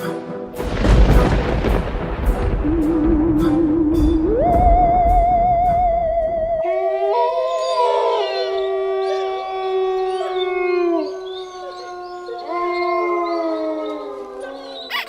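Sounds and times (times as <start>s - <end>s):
dog howling: 5.9s - 15.0s.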